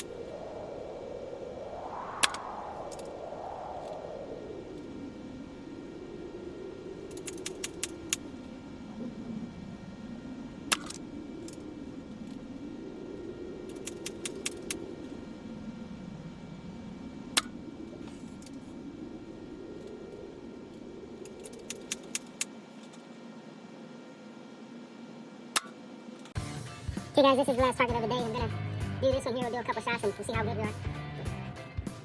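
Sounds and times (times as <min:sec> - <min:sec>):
low drone: 0:00.0 - 0:31.5
small metallic clicks: 0:07.1 - 0:08.3, 0:10.7 - 0:11.6, 0:13.7 - 0:14.8, 0:21.2 - 0:23.0.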